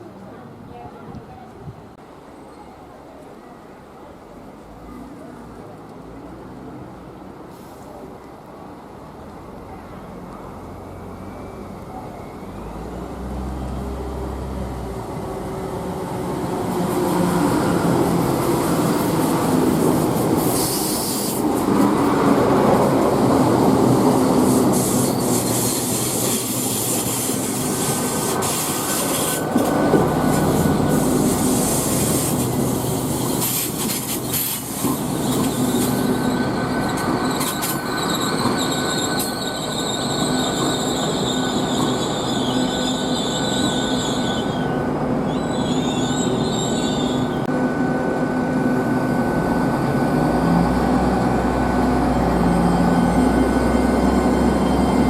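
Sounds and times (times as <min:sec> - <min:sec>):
train running past: 0:10.0 - 0:55.0
high-pitched wheel squeal: 0:24.7 - 0:29.7, 0:34.8 - 0:47.4.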